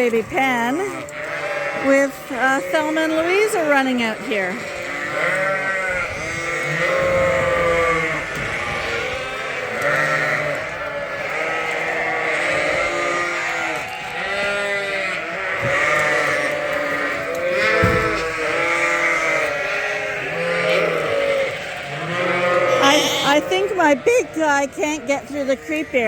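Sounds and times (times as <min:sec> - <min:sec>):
lambs bleating: 0:00.0 - 0:26.0.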